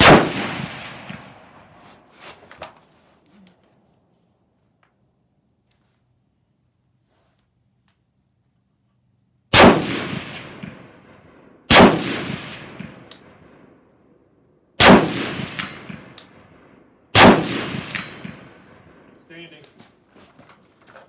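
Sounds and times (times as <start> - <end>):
rifle shots echoing: 0.0 - 1.8, 9.5 - 13.8, 14.8 - 19.2.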